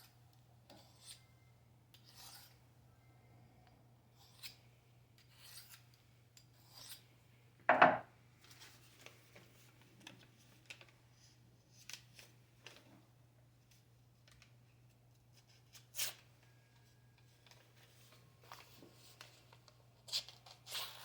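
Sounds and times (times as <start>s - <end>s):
knife sharpening scrapes: 0.7s - 1.2s, 1.9s - 2.6s, 4.2s - 4.6s, 5.2s - 5.8s, 6.6s - 7.0s.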